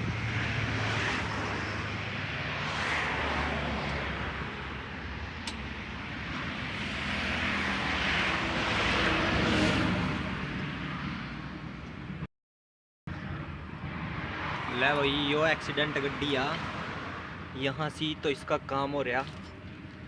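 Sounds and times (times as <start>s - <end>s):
vehicles passing: 0.0s - 12.3s, 13.1s - 20.0s
sharp click: 5.4s - 5.7s.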